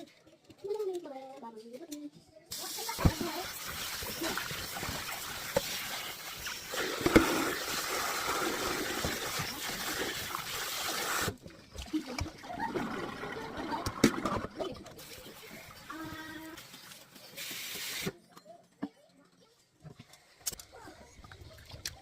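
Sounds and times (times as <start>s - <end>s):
water running and splashing: 2.5s - 18.1s.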